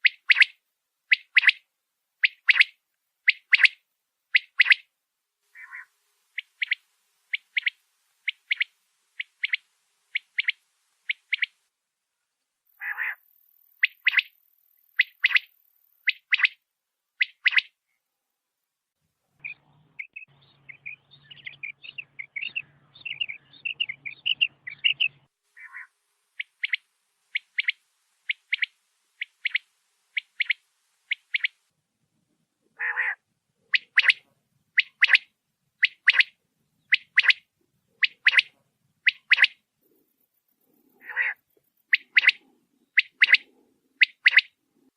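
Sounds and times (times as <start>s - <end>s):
quail calling: 0.0s - 1.6s, 2.2s - 4.9s, 5.5s - 11.6s, 12.7s - 14.3s, 14.9s - 16.6s, 17.2s - 17.7s, 21.4s - 31.6s, 32.8s - 40.0s, 40.7s - 44.6s.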